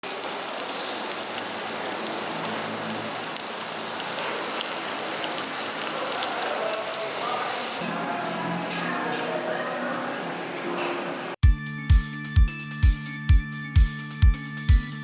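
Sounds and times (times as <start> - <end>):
meat sizzling on a grill pan: 0.0 - 7.8.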